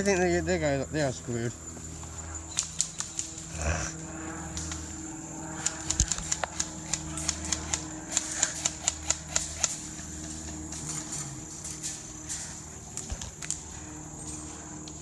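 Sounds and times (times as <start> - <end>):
airsoft guns firing: 5.5 - 11.1.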